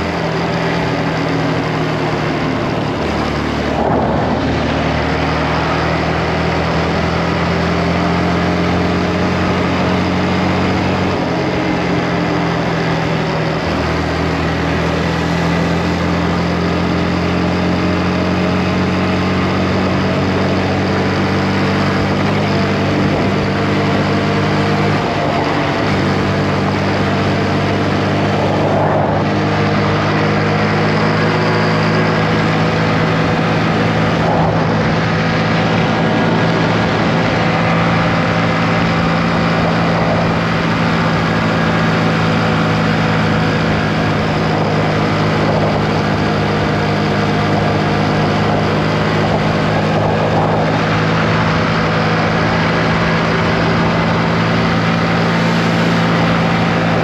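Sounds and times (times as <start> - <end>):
motorcycle engine running: 0.0 - 57.0
steady rush of noise: 0.0 - 57.0.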